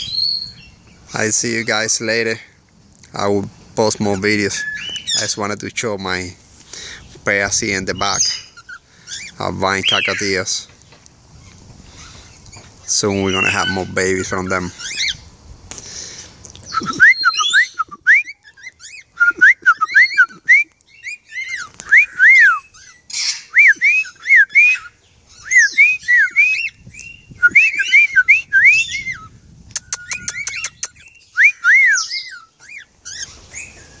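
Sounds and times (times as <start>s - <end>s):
cockatiels whistled chirps: 16.7s - 34.0s.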